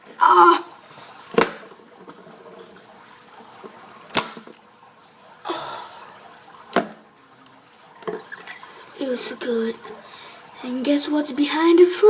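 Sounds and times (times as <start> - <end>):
plastic bottle crack: 1.3 - 1.7, 4.1 - 4.6, 6.7 - 7.0.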